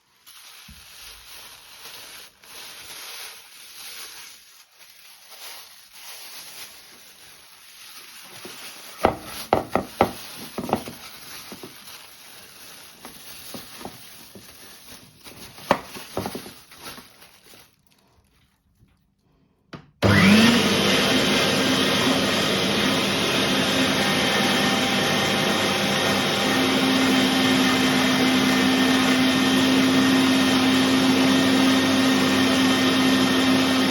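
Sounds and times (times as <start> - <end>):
electric meat grinder motor: 20.0 - 33.9.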